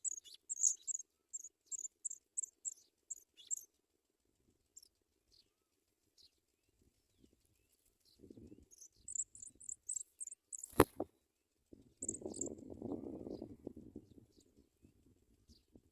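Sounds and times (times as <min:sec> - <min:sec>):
nestlings chirping: 0:00.0 - 0:03.7, 0:08.2 - 0:10.9, 0:12.0 - 0:12.6.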